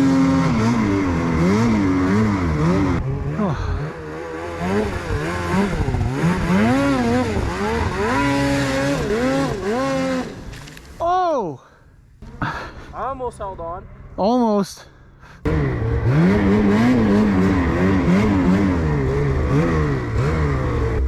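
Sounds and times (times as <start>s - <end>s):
snowmobile engine revving: 0.0s - 11.0s, 15.4s - 21.0s.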